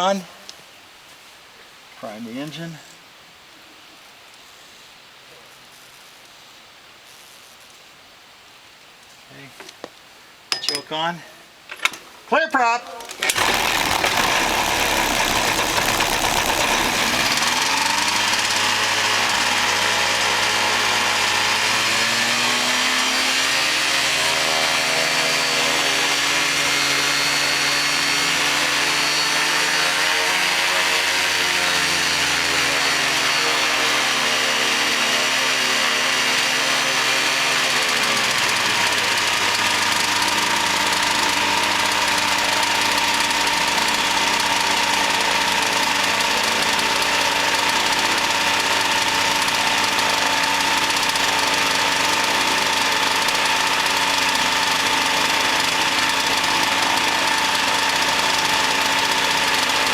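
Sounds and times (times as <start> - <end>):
ultralight aircraft engine running: 13.3 - 21.4, 37.7 - 59.9.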